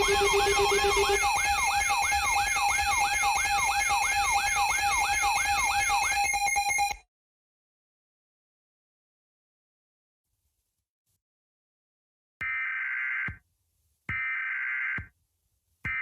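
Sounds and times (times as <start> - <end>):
low pulsing tone: 0.0 - 1.3
electronic siren alarm: 0.0 - 7.0.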